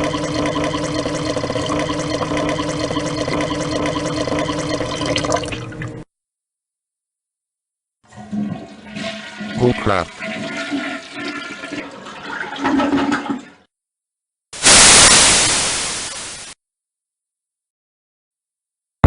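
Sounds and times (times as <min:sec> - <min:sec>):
burst of static white noise: 0:14.6 - 0:16.6.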